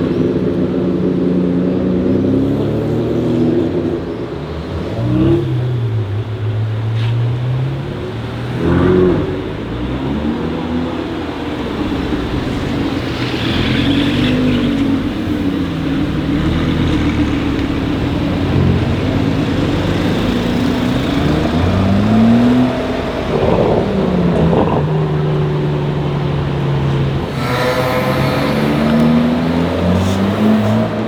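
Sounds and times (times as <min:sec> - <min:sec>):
car engines in traffic: 0:00.0 - 0:31.0
car engine revving: 0:26.8 - 0:31.0.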